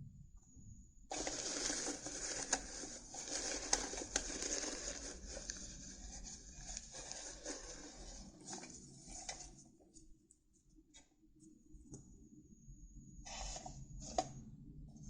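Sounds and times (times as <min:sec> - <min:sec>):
stiff paper cards rustling: 0:01.1 - 0:09.6.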